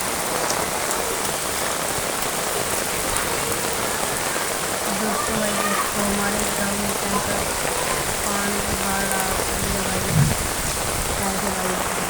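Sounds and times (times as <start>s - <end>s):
heavy rain pouring: 0.0s - 12.0s.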